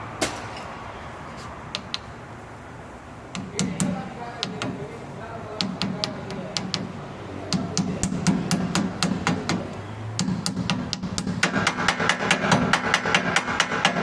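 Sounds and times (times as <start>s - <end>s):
hammer tapping on metal: 1.7s - 2.1s, 3.3s - 4.8s, 5.6s - 14.0s.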